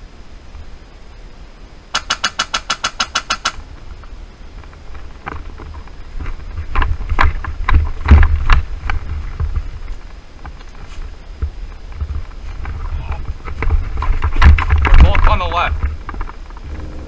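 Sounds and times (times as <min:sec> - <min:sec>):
airsoft rifle rapid fire: 0:01.9 - 0:03.6
knocks and thumps: 0:05.2 - 0:09.7, 0:11.4 - 0:17.0
low rumble: 0:12.5 - 0:17.0.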